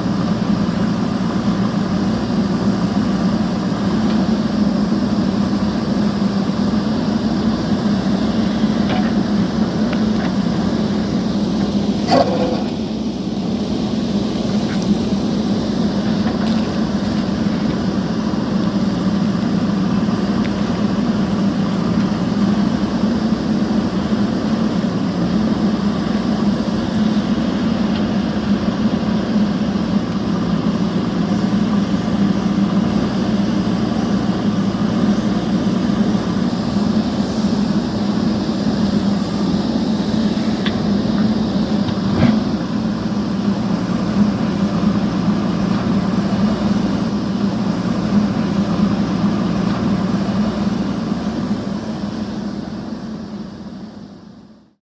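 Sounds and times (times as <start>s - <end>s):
steady machine hum: 0.0s - 54.5s.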